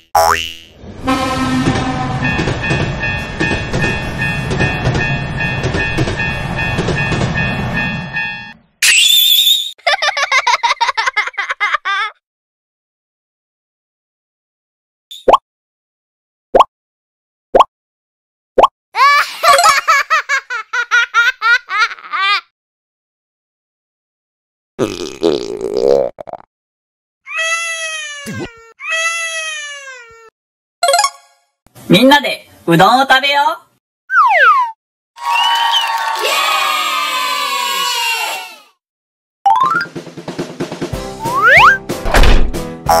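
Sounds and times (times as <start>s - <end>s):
train rumble and wheel clatter: 0.9s - 8.6s
train horn: 1.0s - 2.5s
level-crossing bell ringing: 2.2s - 8.6s
cartoon baby giggling: 9.8s - 12.2s, 19.0s - 22.5s.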